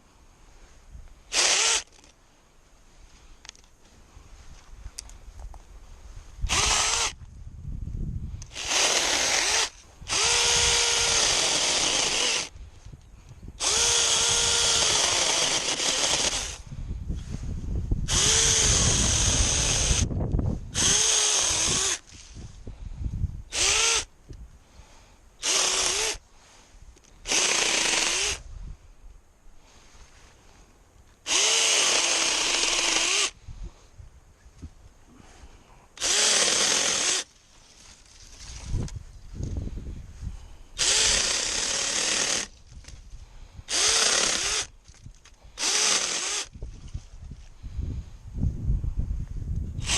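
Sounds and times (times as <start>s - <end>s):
electric chainsaw motor whining: 1.3s - 2.1s, 6.4s - 7.2s, 8.4s - 12.6s, 13.6s - 16.6s, 18.1s - 20.1s, 20.7s - 22.2s, 23.5s - 24.1s, 25.4s - 26.2s, 27.2s - 28.4s, 31.2s - 33.4s, 36.0s - 37.3s, 40.8s - 42.9s, 43.6s - 44.8s, 45.5s - 46.6s
branches rustling and cracking: 37.2s - 39.6s, 44.7s - 45.5s.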